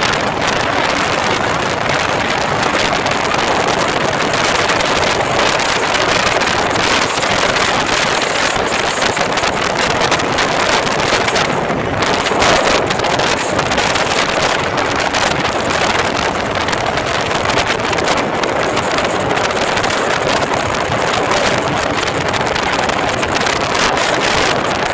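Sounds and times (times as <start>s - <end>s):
motorcycle noise: 0.0s - 24.9s
wind buffeting microphone: 0.0s - 24.9s.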